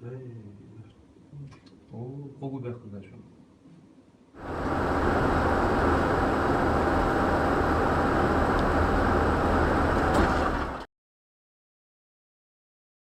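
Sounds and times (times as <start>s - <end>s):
vehicle road and engine rumble: 4.4s - 10.9s.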